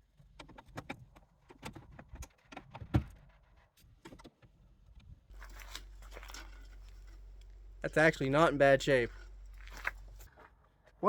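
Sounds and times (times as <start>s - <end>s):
low hum: 5.3s - 10.3s.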